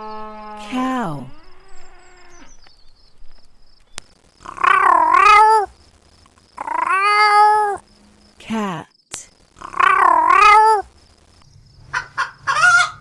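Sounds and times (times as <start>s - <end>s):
cat meowing: 12.0s - 13.0s.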